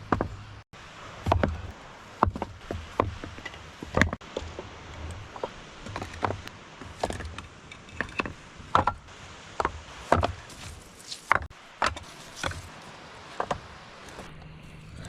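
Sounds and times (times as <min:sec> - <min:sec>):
stones knocking together: 0:01.2 - 0:09.0, 0:09.6 - 0:13.7.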